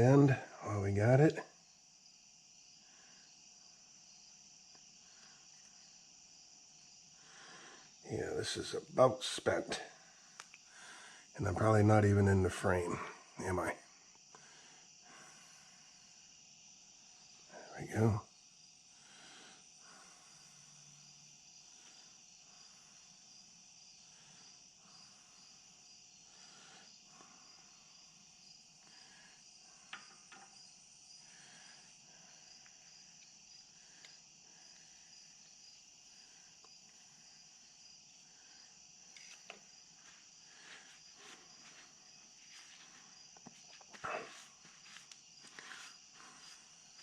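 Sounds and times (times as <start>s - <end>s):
crickets trilling: 0.0s - 47.0s
faint clicks: 10.4s - 10.7s, 34.0s - 34.9s.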